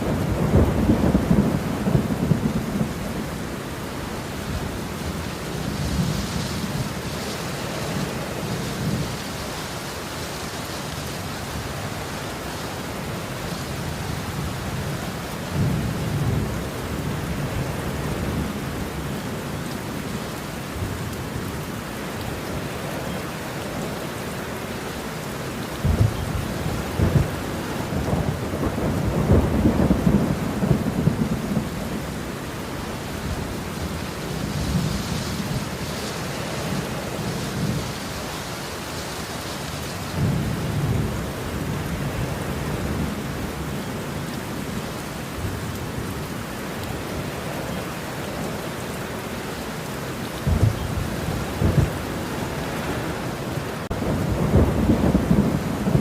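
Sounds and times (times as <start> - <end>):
thunder rolling: 0.0 - 3.2, 25.8 - 32.0, 50.4 - 52.2, 53.9 - 56.0
heavy rain: 0.0 - 56.0.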